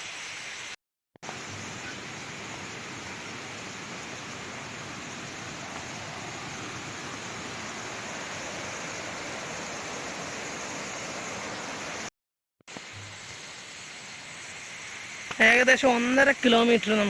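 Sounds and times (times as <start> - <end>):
waterfall rushing: 1.3 - 12.1.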